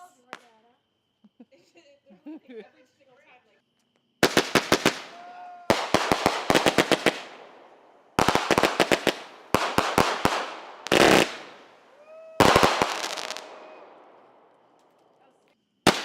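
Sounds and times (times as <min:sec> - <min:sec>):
fireworks bangs and cracks: 0:04.2 - 0:15.1.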